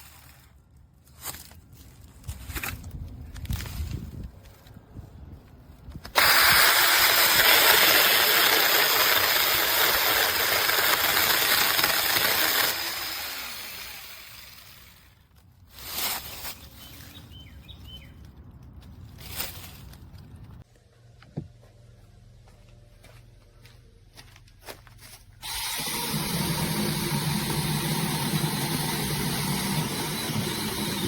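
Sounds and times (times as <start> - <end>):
electric chainsaw running: 6.1 - 15.1, 25.4 - 31.0.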